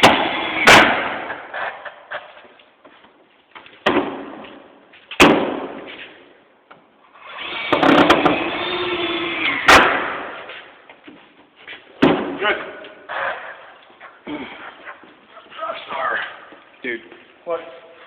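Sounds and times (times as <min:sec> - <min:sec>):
construction bangs and knocks: 0:00.0 - 0:01.4, 0:07.7 - 0:08.5.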